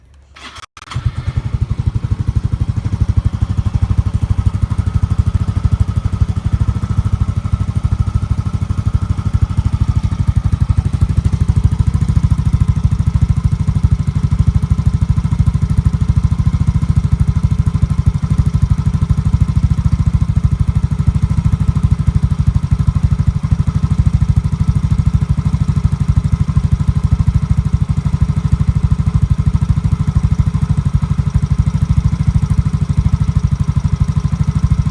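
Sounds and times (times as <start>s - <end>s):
scooter engine idling: 0.4s - 34.9s.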